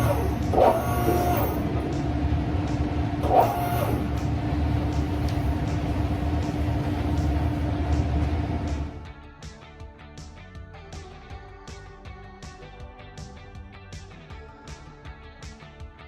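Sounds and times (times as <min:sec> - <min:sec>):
hydraulic pump motor running: 0:00.0 - 0:09.0.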